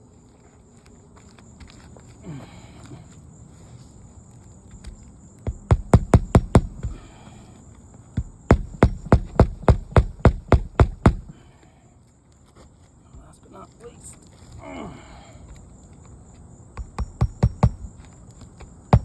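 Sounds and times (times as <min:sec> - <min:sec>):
hammer driving nails: 0:05.5 - 0:07.0, 0:08.2 - 0:11.4, 0:16.8 - 0:17.9.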